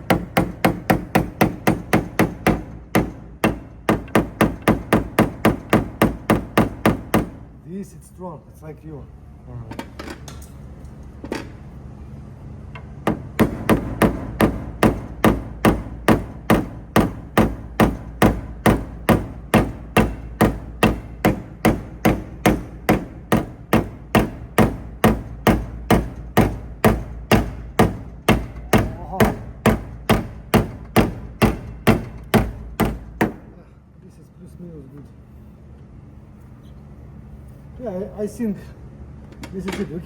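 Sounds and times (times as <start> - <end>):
hammer tapping car body panel: 0.0 - 7.5, 13.0 - 33.6.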